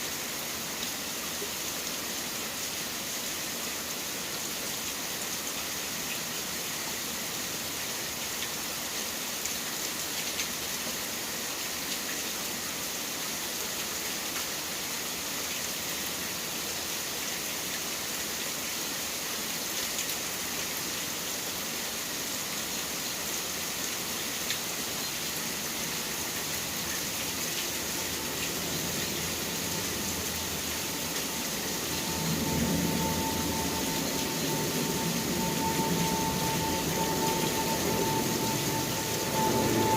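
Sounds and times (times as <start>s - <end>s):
rain falling: 0.0s - 39.9s
steady whine: 27.3s - 39.9s.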